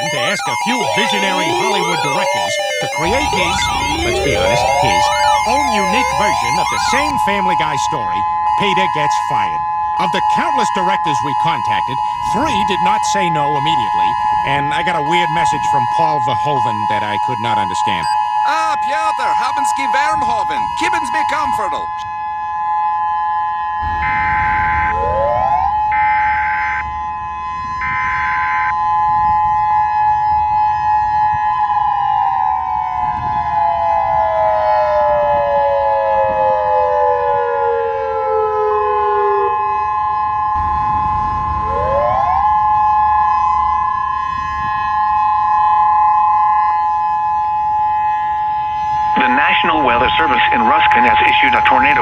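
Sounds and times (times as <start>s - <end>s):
two-tone attention signal: 0.0s - 7.9s
data header screech: 0.0s - 22.0s
siren-like gliding tones: 0.0s - 31.4s, 32.0s - 52.0s.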